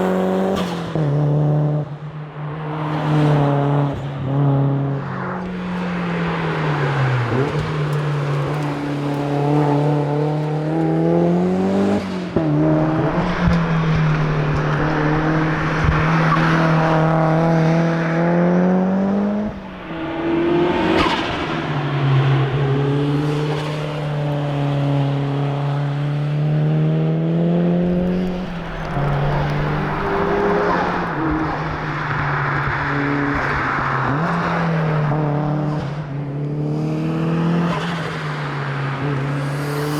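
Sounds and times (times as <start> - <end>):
tyre and road noise: 5.0 - 24.9, 27.7 - 35.1
car engine revving hard: 27.6 - 34.6.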